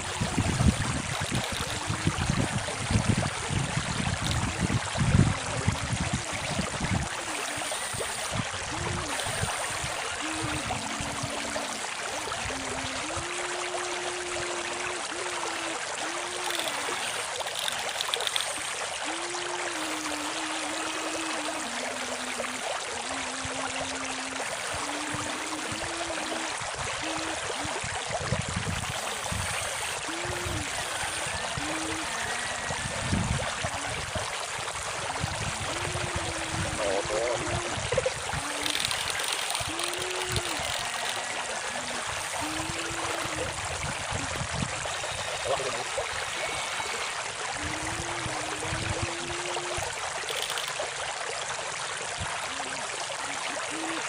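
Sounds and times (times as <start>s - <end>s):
river water rushing: 0.0s - 54.0s
small electric motor whining: 7.1s - 22.6s, 28.8s - 33.1s, 35.6s - 43.6s, 44.8s - 50.8s.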